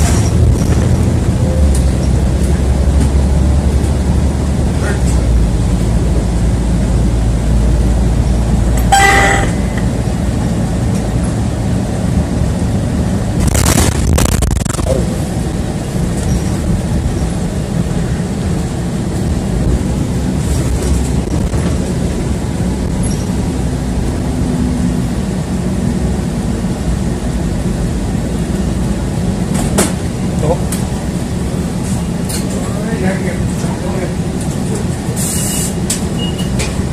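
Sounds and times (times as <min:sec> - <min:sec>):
bus engine and road rumble: 0:00.0 - 0:36.9
brief ringing tone: 0:08.9 - 0:09.9.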